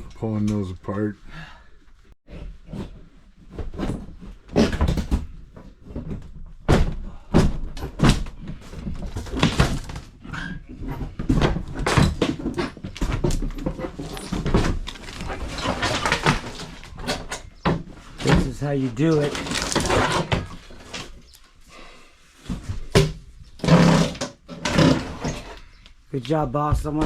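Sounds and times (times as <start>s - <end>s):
demolition knocks and bangs: 3.6s - 10.2s, 10.8s - 20.8s.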